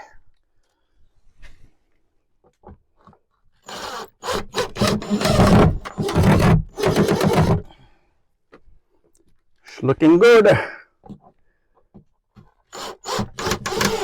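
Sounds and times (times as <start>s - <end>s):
power driver driving screw into wood: 3.6s - 7.7s, 12.7s - 14.0s.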